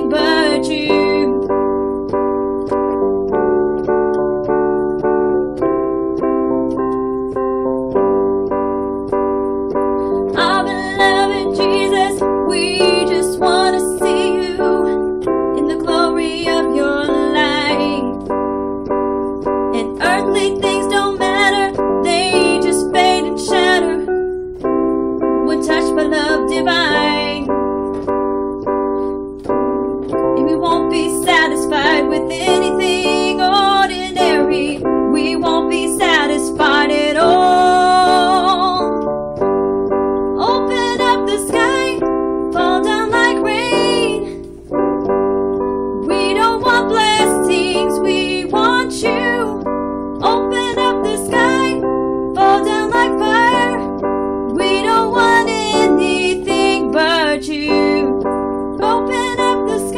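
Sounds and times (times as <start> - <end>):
woman singing with vibrato: 0.0 - 1.5, 10.3 - 18.2, 19.7 - 24.1, 25.4 - 27.5, 30.4 - 39.0, 40.4 - 44.4, 46.0 - 49.6, 50.2 - 58.2, 58.8 - 59.9
sustained keyboard chords: 0.0 - 59.9.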